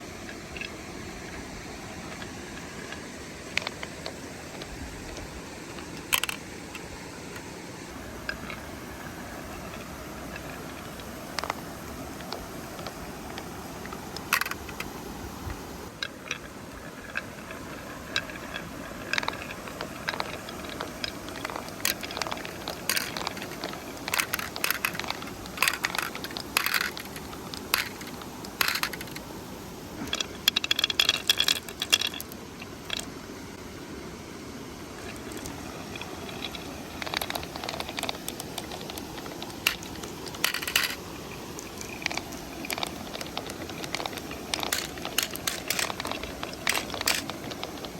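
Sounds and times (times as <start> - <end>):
stream murmuring: 0.0 - 47.9
marbles clacking down wooden run: 18.1 - 29.2, 30.1 - 33.1, 36.4 - 41.0, 41.8 - 47.9.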